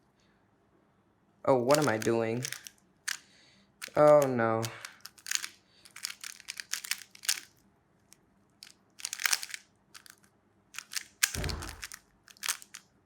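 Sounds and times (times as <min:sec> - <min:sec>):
plastic puzzle cube clicking: 0:01.6 - 0:03.2, 0:03.8 - 0:13.0.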